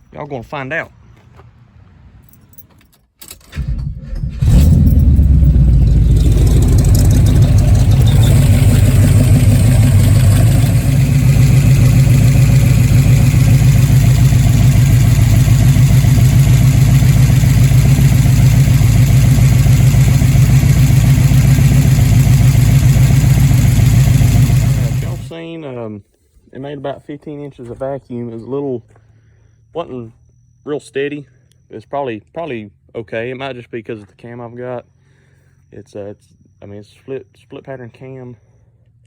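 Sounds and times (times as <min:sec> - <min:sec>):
engine cranking and idling: 0:03.5 - 0:25.4.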